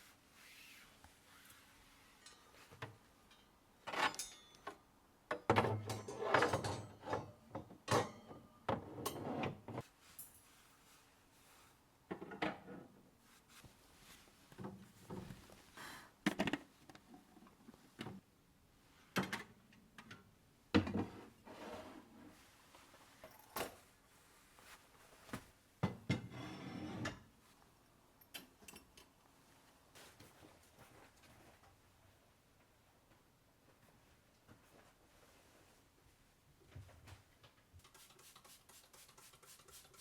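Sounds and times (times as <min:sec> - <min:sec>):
scrape or rustle: 0:00.0 - 0:02.7, 0:09.2 - 0:11.8, 0:21.4 - 0:25.5
kitchen items clattering: 0:05.4 - 0:09.7.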